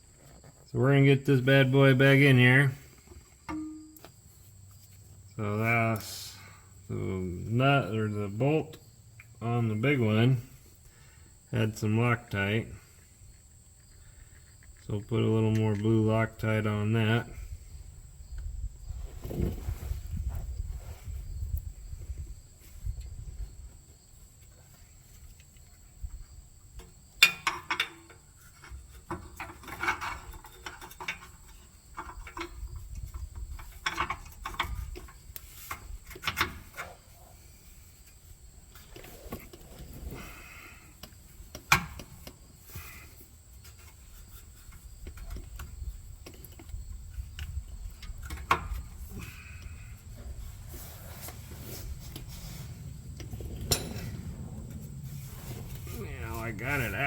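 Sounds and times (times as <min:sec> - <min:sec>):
tools clinking and knocking: 0:03.4 - 0:04.1, 0:27.2 - 0:35.2, 0:53.2 - 0:54.3.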